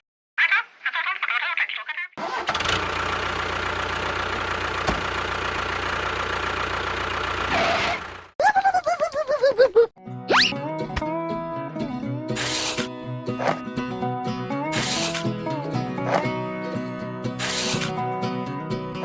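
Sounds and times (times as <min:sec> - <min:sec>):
tractor engine running: 0:02.2 - 0:08.4, 0:14.7 - 0:18.2
falling cartoon tones: 0:10.3 - 0:10.6.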